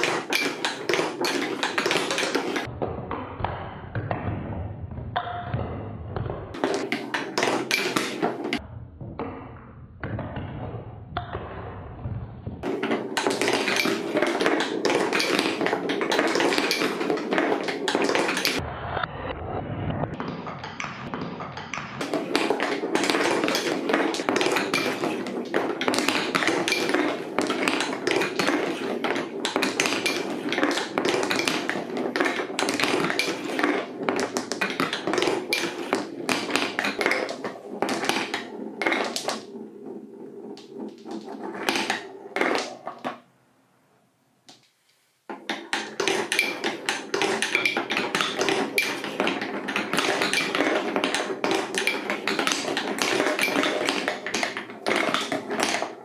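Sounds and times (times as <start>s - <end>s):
marbles clattering down a track: 12.6s - 18.6s, 21.6s - 43.1s, 45.5s - 56.0s.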